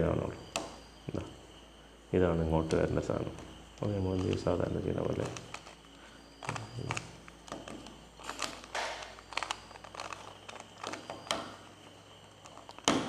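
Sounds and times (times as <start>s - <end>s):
plastic cube clicking and scraping: 5.2s - 5.8s, 6.4s - 11.4s.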